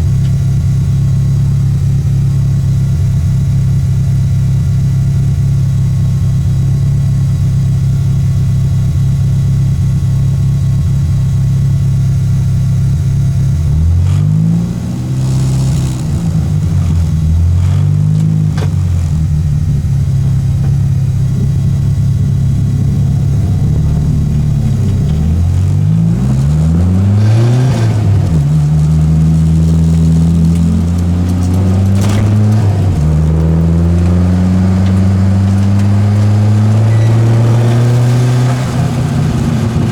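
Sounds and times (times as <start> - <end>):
race car engine revving: 12.2 - 39.9.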